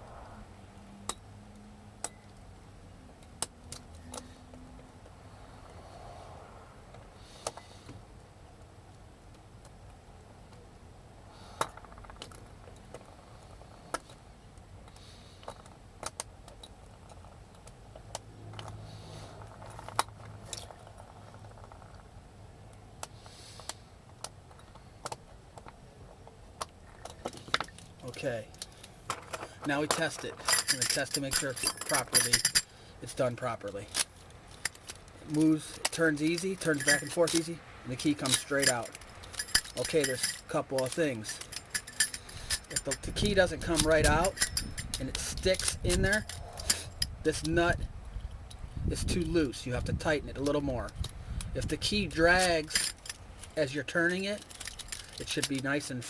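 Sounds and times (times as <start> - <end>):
metallic clicks of lock parts: 1.0 - 2.5, 3.1 - 5.2, 11.6 - 22.0, 22.7 - 47.6, 48.2 - 56.0
small sharp metal clicks: 33.6 - 47.5, 50.4 - 55.8.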